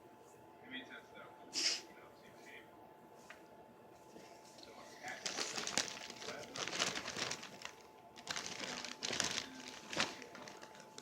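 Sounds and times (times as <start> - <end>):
objects rustling and scraping: 3.2 - 11.0.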